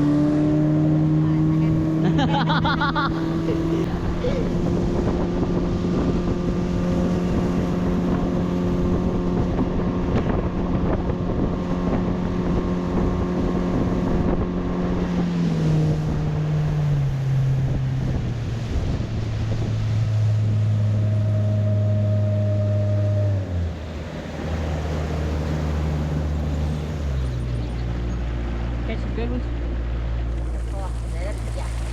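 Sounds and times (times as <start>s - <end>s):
boat engine running: 0.0s - 31.9s.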